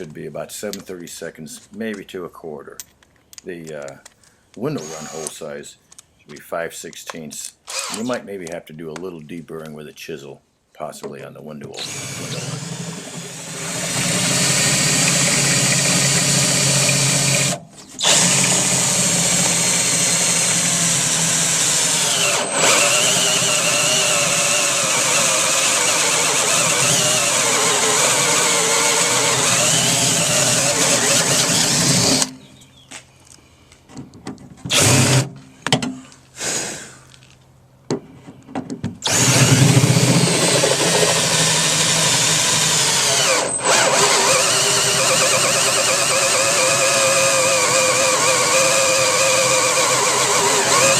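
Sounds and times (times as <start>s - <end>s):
cordless drill drilling into steel: 4.8s - 5.3s, 7.7s - 8.1s, 11.8s - 32.3s, 34.7s - 35.3s, 39.0s - 50.9s.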